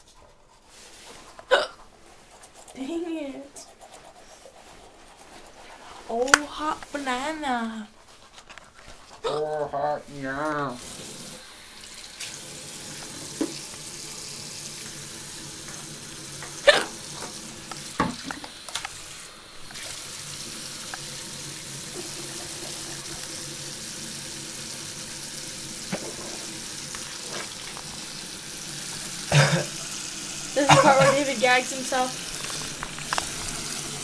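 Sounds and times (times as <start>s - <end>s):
toothbrush scrubbing: 0.0s - 11.5s, 12.8s - 23.6s, 25.9s - 34.0s
person hiccuping: 1.5s - 1.8s, 9.2s - 9.6s, 16.6s - 17.0s, 29.3s - 29.7s, 30.6s - 31.3s.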